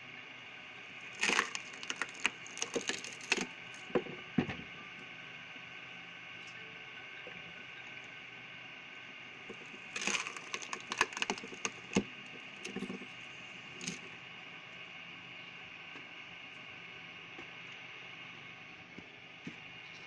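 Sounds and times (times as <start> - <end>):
machine humming: 0.6 - 4.2, 9.2 - 14.2
wood cracking and splintering: 1.1 - 3.9, 9.5 - 13.1.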